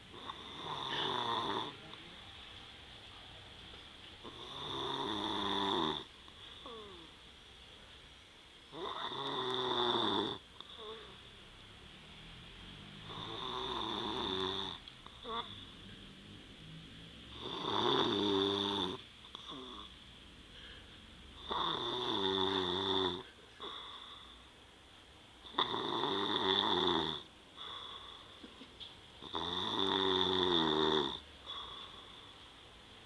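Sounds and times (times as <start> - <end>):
man snoring: 0.1 - 1.8, 4.2 - 7.1, 8.7 - 11.0, 13.0 - 15.6, 17.3 - 19.9, 21.4 - 23.8, 25.5 - 27.3, 29.2 - 31.7
soft breathing: 6.2 - 7.2, 19.3 - 21.3, 23.2 - 24.7, 27.5 - 28.6, 31.4 - 32.8.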